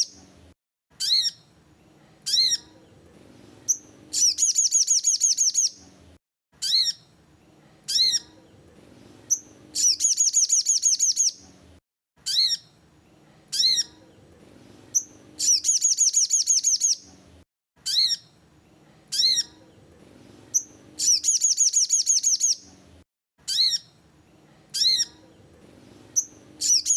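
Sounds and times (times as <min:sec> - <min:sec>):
sunbird chirps and trill: 0:00.0 - 0:00.3, 0:00.9 - 0:03.0, 0:03.6 - 0:05.8, 0:06.6 - 0:08.6, 0:09.2 - 0:11.5, 0:12.2 - 0:12.8, 0:13.5 - 0:14.1, 0:14.9 - 0:17.2, 0:17.8 - 0:18.4, 0:19.1 - 0:19.8, 0:20.4 - 0:22.7, 0:23.4 - 0:24.0, 0:24.7 - 0:25.4, 0:26.0 - 0:26.9.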